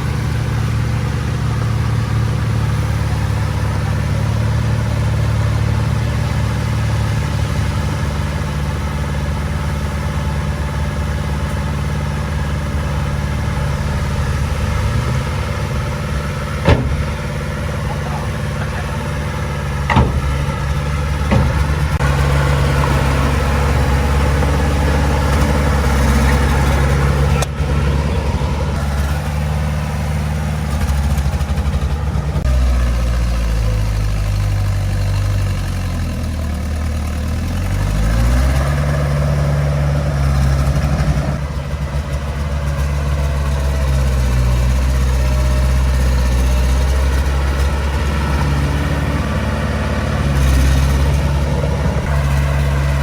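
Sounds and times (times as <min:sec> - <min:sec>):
bulldozer diesel engine running: 0:00.0 - 0:53.0
sharp metal clanks: 0:16.4 - 0:22.1.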